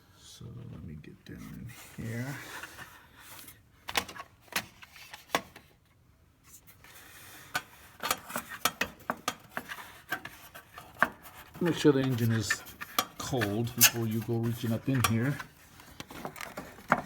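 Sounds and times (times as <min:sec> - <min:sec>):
clicks and rattles of parts handled: 0:02.5 - 0:05.7, 0:07.4 - 0:17.0.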